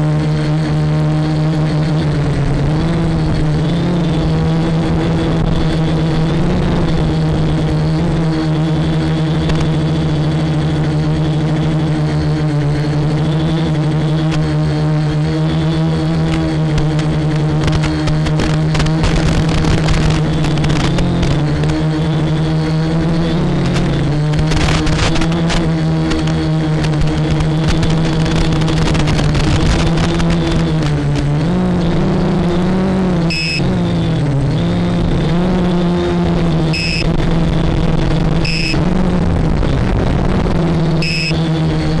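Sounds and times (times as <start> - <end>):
quadcopter motors whining: 0.0 - 42.0
short high beeps: 33.3 - 33.7, 36.7 - 37.1, 38.4 - 38.8, 41.0 - 41.4.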